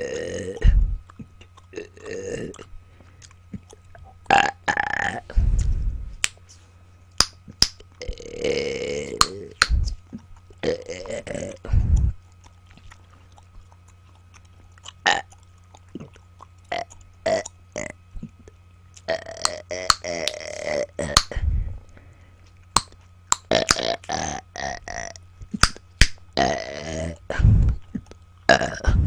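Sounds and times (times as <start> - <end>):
woman burping: 0.0 - 0.8, 28.5 - 29.0.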